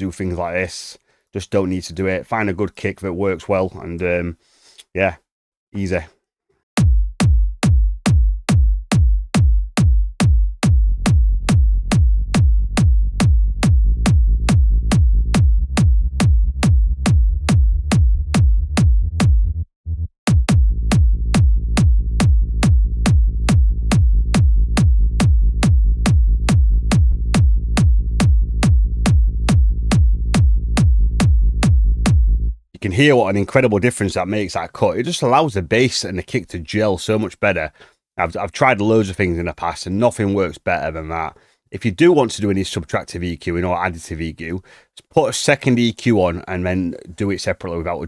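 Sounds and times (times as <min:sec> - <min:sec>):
electronic kick drum beat: 0:06.8 - 0:32.5
sustained sub bass: 0:06.8 - 0:32.6.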